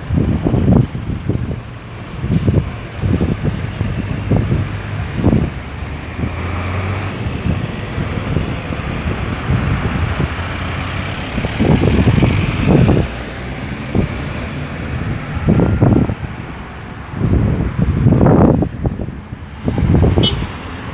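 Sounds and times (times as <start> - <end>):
road traffic engines and tyres: 0.0 - 20.9
wind buffeting microphone: 0.0 - 20.9.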